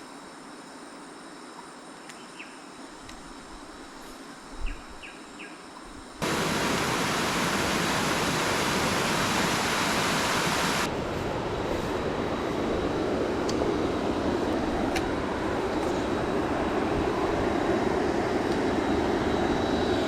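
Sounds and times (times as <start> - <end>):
insect drone: 0.0 - 20.0
fast-flowing stream water: 6.2 - 10.9.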